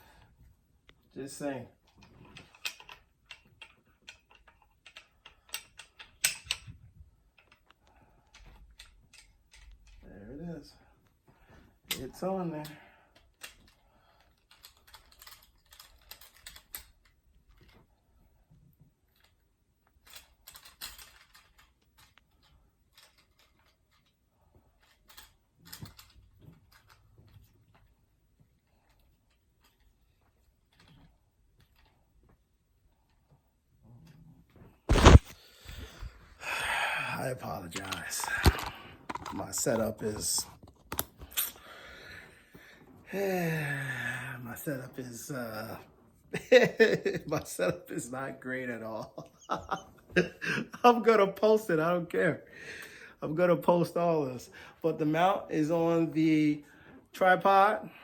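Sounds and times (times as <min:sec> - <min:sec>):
small equipment clicks and knocks: 0:01.9 - 0:10.1, 0:37.7 - 0:41.6.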